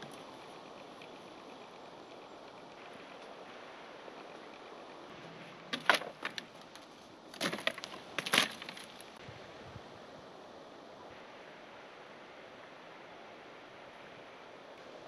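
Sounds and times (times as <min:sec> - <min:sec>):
background hiss: 0:00.0 - 0:15.0
dry wood cracking: 0:05.6 - 0:09.2.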